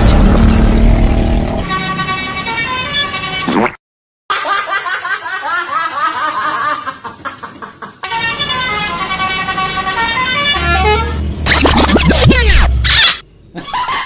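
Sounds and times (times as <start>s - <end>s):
multi-tone bus horn melody: 1.4s - 3.5s, 8.0s - 11.5s.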